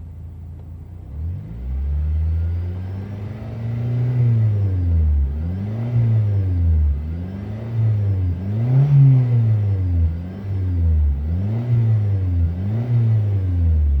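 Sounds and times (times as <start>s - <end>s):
car engine revving: 1.1s - 14.0s.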